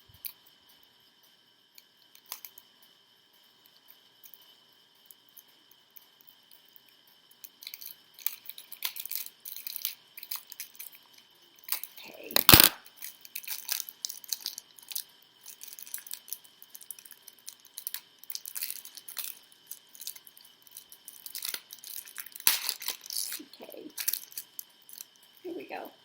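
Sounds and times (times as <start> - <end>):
plastic packaging crinkling: 15.5 - 25.1.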